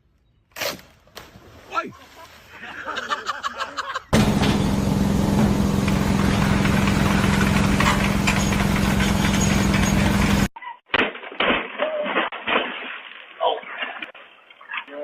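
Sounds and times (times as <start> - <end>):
vehicle engine running: 4.1 - 10.5.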